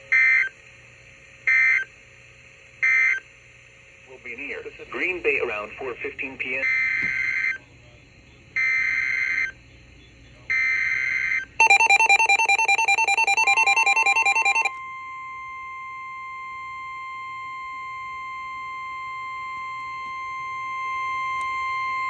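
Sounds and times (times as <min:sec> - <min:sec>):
pulsing electronic warble: 0:11.6 - 0:14.7
steady warning alarm tone: 0:11.6 - 0:14.7.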